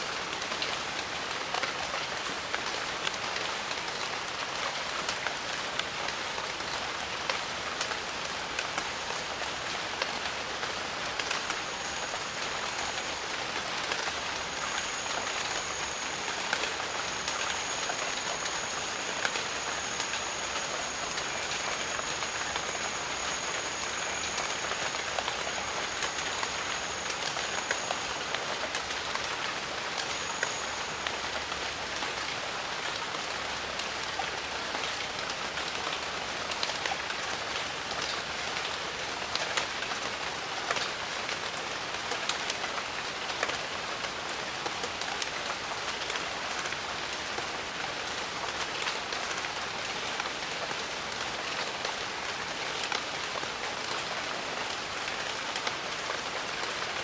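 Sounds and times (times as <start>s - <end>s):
steady rain: 0.0s - 57.0s
thin high steady tone: 6.4s - 32.3s.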